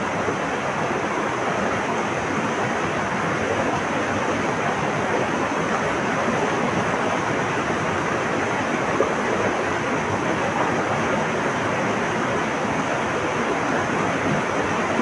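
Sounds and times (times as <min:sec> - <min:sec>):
water rushing: 0:00.0 - 0:15.0.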